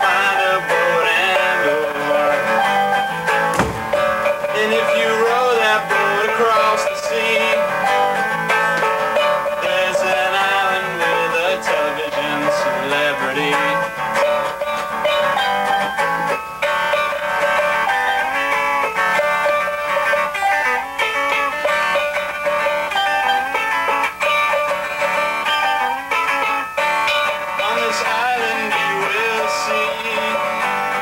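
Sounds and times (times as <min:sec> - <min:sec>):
music with plucked guitar: 0:00.0 - 0:31.0
brief thump: 0:03.5 - 0:04.4.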